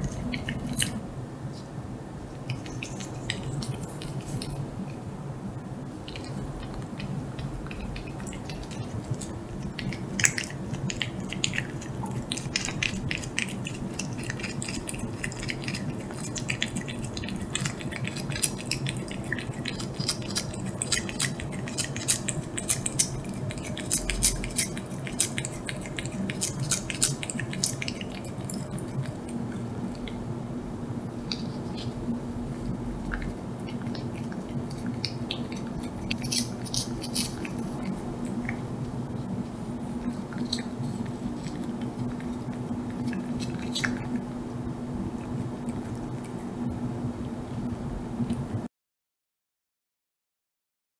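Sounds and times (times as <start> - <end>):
cat licking wetly: 0.0 - 1.0, 2.4 - 5.0, 6.0 - 30.2, 31.2 - 46.6.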